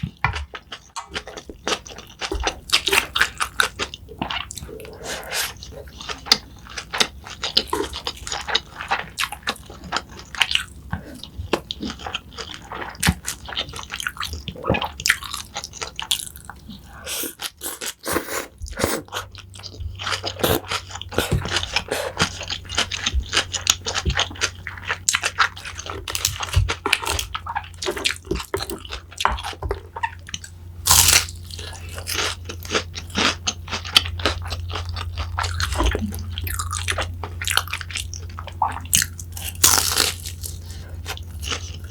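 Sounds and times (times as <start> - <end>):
person chewing crunchy food: 0.0 - 41.9
low steady hum: 18.1 - 41.9.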